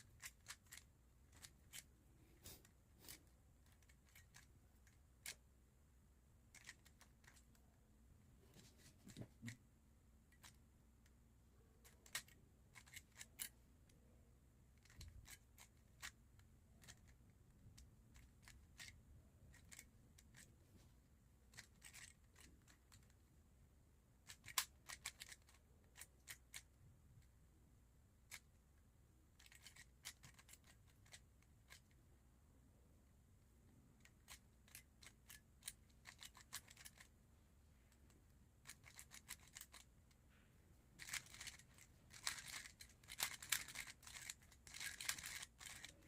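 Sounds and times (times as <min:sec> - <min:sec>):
puzzle cube plastic clicks: 0:00.0 - 0:01.9, 0:02.5 - 0:05.4, 0:06.5 - 0:07.7, 0:11.8 - 0:14.1, 0:14.7 - 0:20.6, 0:21.5 - 0:23.2, 0:24.2 - 0:27.3, 0:29.3 - 0:32.0, 0:34.0 - 0:37.2, 0:37.9 - 0:40.2, 0:41.0 - 0:46.0.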